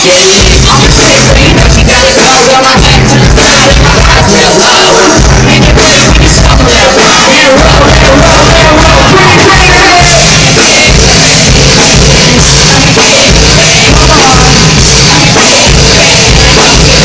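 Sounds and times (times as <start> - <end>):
loud live music with heavy bass: 0.0 - 17.0
person singing: 0.0 - 17.0.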